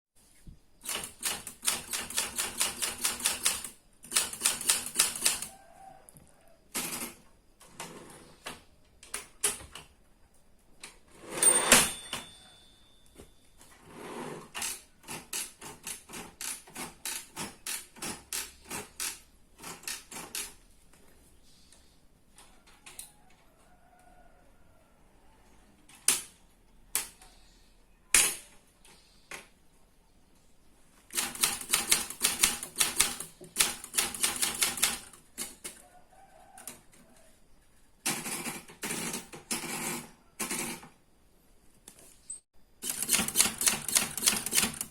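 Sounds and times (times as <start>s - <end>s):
typewriter clatter with ringing tone: 11.2s - 13.4s, 31.2s - 35.2s, 38.1s - 40.9s, 42.8s - 44.9s
typewriter keys clacking: 42.8s - 44.9s.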